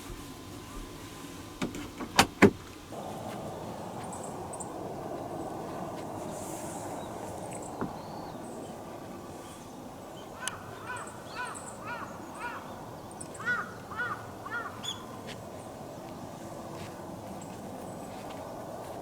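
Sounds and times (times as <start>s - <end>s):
background hiss: 0.0s - 19.0s
bird calling: 3.0s - 8.8s, 10.2s - 15.2s.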